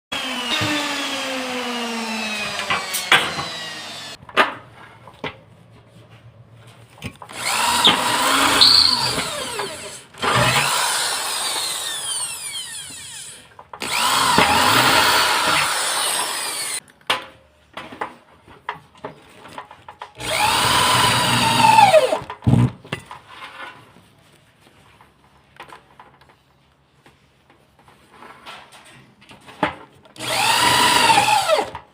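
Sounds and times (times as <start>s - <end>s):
power tool motor spinning: 0.2s - 4.2s, 7.3s - 16.8s, 20.2s - 22.2s, 30.2s - 31.7s.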